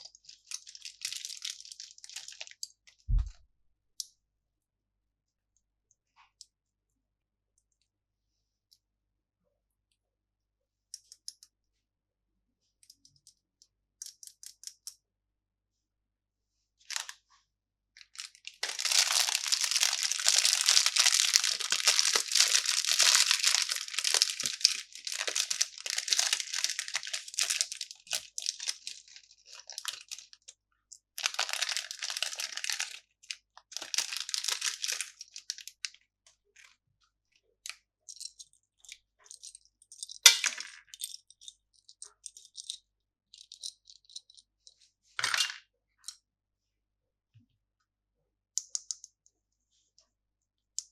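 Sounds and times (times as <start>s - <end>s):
packaging crinkling and tearing: 0.2s - 2.5s, 18.1s - 30.3s, 31.2s - 33.0s, 33.7s - 35.6s
small clicks and taps: 48.6s - 49.4s.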